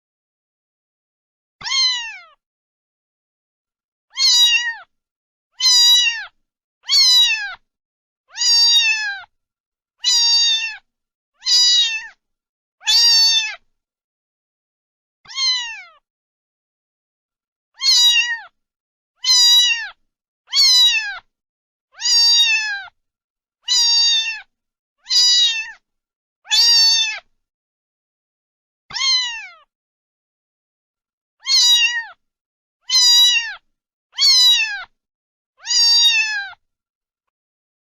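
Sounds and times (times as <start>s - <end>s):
cat meowing: 1.6s - 2.4s, 4.1s - 4.9s, 5.6s - 7.6s, 8.3s - 9.3s, 10.0s - 12.2s, 12.8s - 13.6s, 15.3s - 16.0s, 17.8s - 18.6s, 19.2s - 21.3s, 22.0s - 23.0s, 23.6s - 25.8s, 26.5s - 27.3s, 28.9s - 29.7s, 31.4s - 32.2s, 32.8s - 35.0s, 35.6s - 36.6s.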